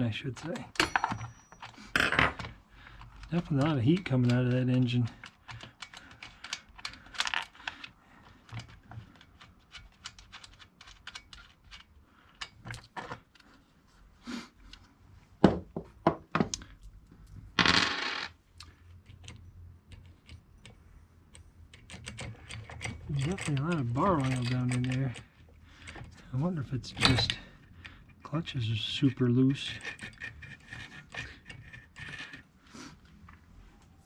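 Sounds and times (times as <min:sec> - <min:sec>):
wrench and metal parts clinking: 0:00.4 - 0:07.9, 0:22.0 - 0:26.4.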